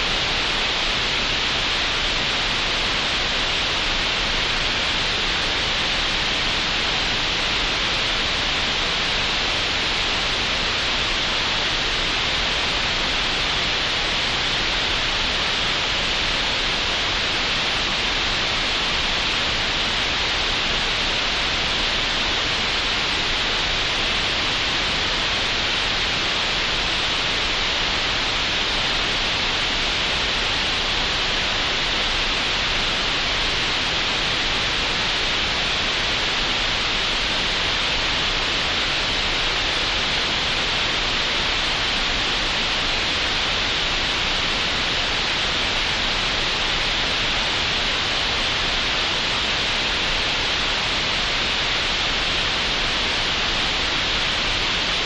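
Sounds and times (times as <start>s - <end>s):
continuous green noise hiss: 0.0s - 55.0s.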